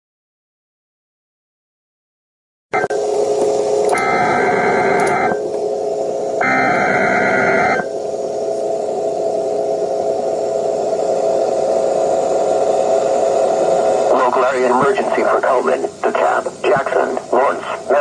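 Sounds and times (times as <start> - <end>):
data tone bursts: 2.8 - 3.1, 3.7 - 8.6, 14.1 - 18.0
faint hum: 2.8 - 18.0
radio hiss: 2.8 - 18.0.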